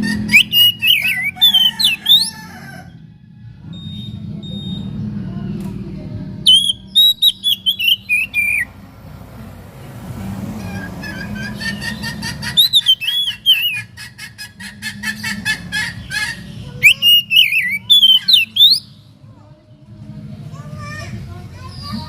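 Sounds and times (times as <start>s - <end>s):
songbird singing whistled phrases: 0.1s - 2.4s, 6.4s - 8.7s, 12.5s - 13.8s, 16.2s - 19.0s.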